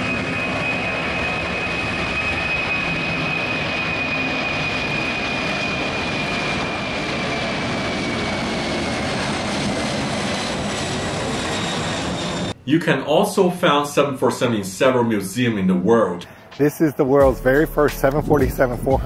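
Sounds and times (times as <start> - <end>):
jet engines of passing airliner: 0.0 - 12.6, 16.2 - 17.2.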